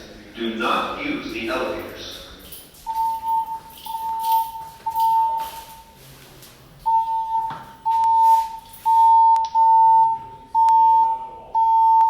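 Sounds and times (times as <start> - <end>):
pulsing alarm beep: 2.9 - 5.9, 6.9 - 12.0.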